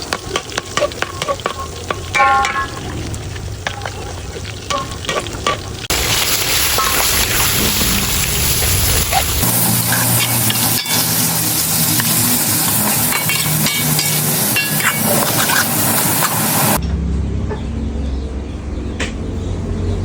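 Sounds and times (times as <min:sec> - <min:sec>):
dull low rumble: 0:01.8 - 0:10.6
food sizzling in a hot pan: 0:05.9 - 0:16.8.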